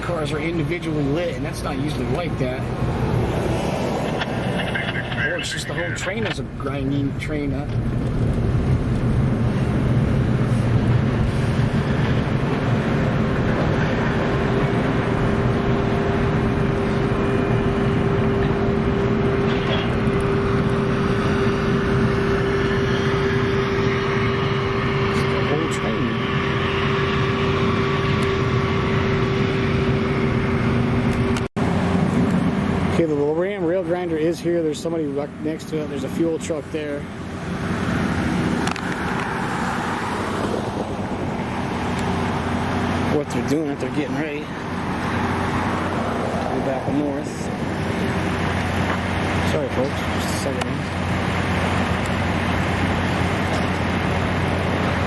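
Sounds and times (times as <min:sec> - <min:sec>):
engines droning: 0:00.0 - 0:55.0
traffic noise: 0:00.0 - 0:55.0.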